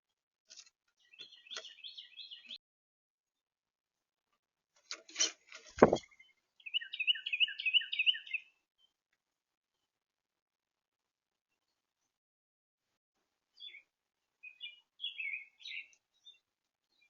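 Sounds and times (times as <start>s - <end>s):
small bird chirping: 1.0s - 2.6s, 5.8s - 9.0s, 13.6s - 17.0s
loud low thump: 5.8s - 6.0s.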